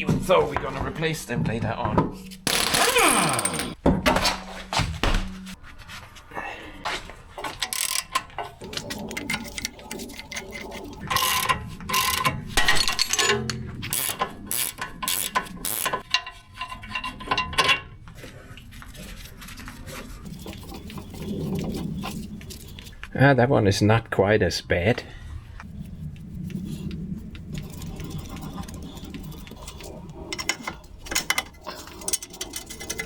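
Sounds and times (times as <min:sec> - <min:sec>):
metallic clatter of hand tools: 0:07.4 - 0:18.0, 0:27.6 - 0:33.0
ratchet clicking: 0:13.9 - 0:16.0.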